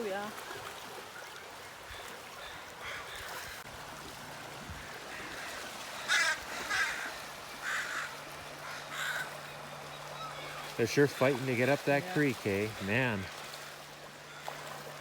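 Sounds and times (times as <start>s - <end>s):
birds calling harshly: 1.8s - 3.6s, 4.8s - 14.6s.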